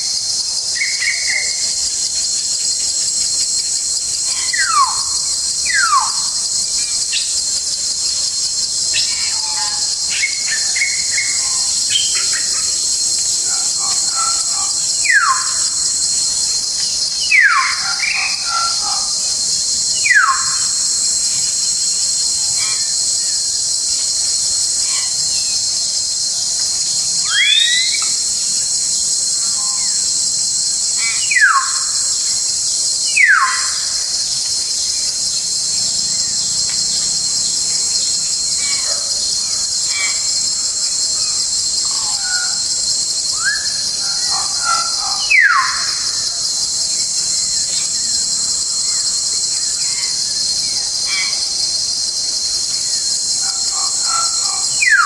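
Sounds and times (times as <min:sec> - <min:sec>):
insects droning: 0:00.0 - 0:55.0.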